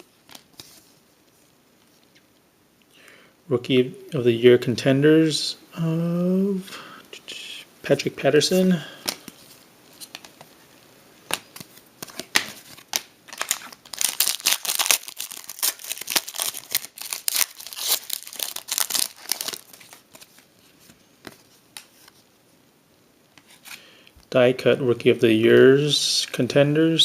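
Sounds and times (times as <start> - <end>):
card pack wrappers crinkling: 11.3 - 22.1.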